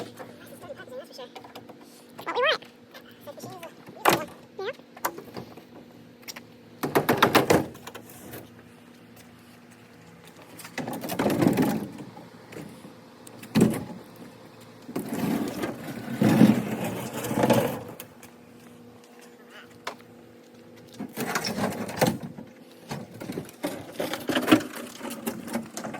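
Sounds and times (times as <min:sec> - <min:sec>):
scraping and rustling: 0:14.6 - 0:18.2.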